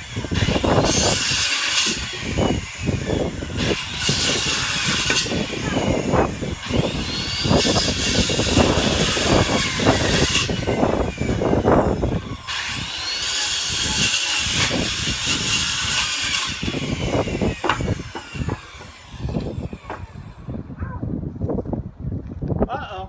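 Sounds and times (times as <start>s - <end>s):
circular saw cutting wood: 0.0s - 20.5s
knocks and crackles: 13.3s - 22.5s.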